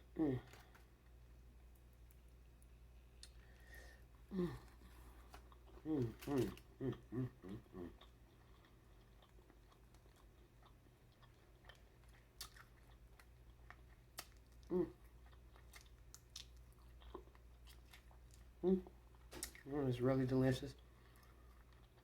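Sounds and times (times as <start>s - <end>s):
person humming: 0.2s - 0.7s, 4.3s - 4.8s, 5.8s - 7.9s
wet chewing: 4.5s - 19.7s.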